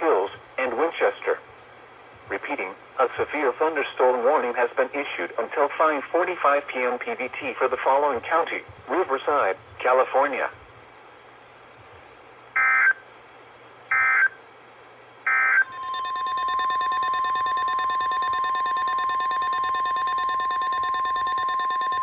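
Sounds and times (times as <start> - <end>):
steady warning alarm tone: 12.6 - 13.0, 13.9 - 14.4, 15.3 - 22.0
digital data tone bursts: 15.3 - 22.0.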